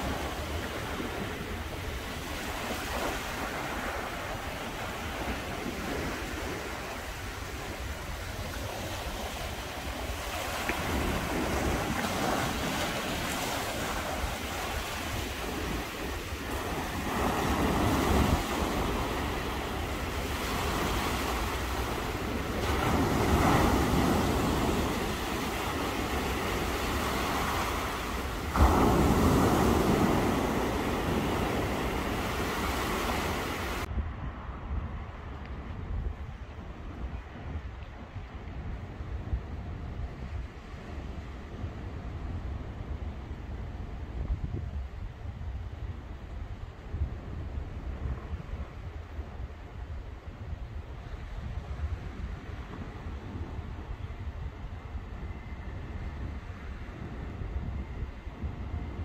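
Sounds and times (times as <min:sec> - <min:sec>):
sea waves breaking on beach: 0:00.0 - 0:33.9
wind rumble on microphone: 0:00.0 - 0:59.0.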